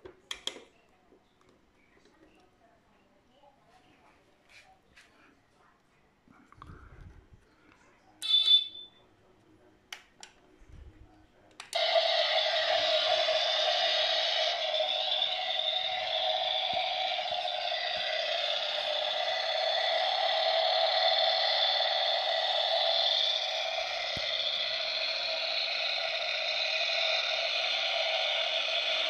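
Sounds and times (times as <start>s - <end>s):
engine sound from tiny speaker: 11.8s - 29.0s.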